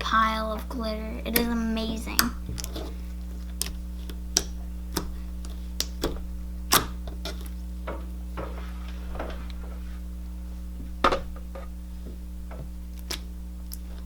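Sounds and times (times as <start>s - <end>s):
low electrical hum: 0.0s - 14.0s
slime clicking and popping: 3.5s - 7.5s.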